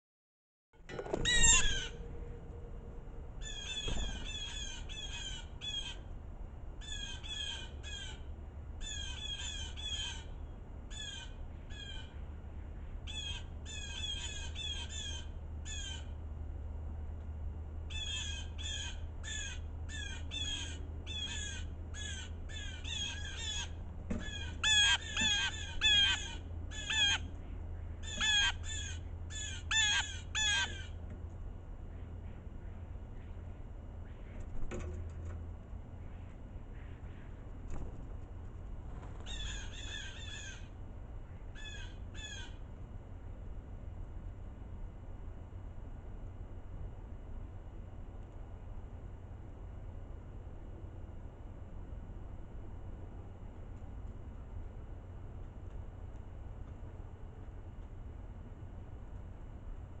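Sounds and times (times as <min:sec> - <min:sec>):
harsh raspy jay calls: 0:01.3 - 0:02.0, 0:03.4 - 0:06.1, 0:06.8 - 0:08.2, 0:08.8 - 0:12.2, 0:13.1 - 0:16.1, 0:17.9 - 0:27.3, 0:28.0 - 0:31.0, 0:39.3 - 0:40.7, 0:41.6 - 0:42.6.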